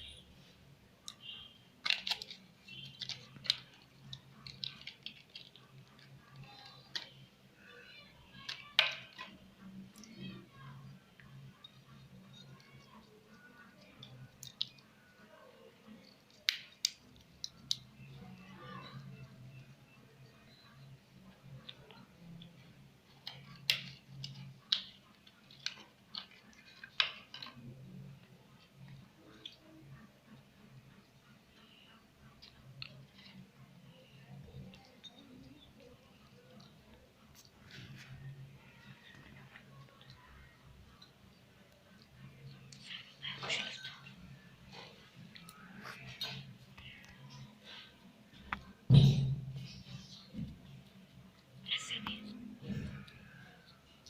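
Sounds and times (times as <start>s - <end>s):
slime clicking and crackling: 1.0s - 10.7s, 15.9s - 18.1s, 21.6s - 29.9s.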